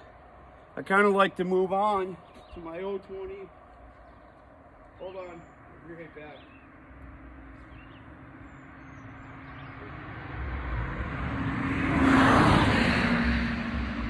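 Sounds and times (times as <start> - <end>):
road vehicle passing by: 0.0 - 14.0.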